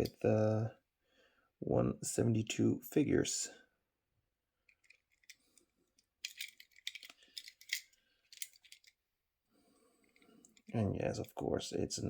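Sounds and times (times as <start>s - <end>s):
toy vehicles clicking and scraping: 4.7s - 5.6s, 6.2s - 9.0s.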